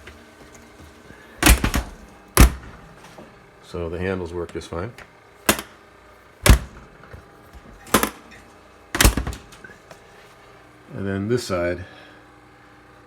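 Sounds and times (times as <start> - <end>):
refrigerator door latch clunks: 1.4 - 3.2, 5.5 - 5.8, 6.4 - 8.4, 9.0 - 9.8.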